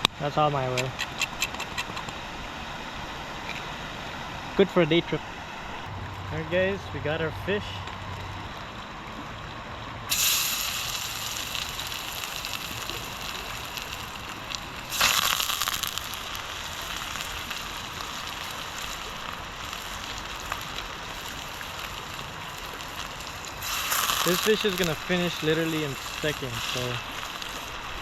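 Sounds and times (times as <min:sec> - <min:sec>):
fish sizzling in hot oil: 0:10.1 - 0:28.0.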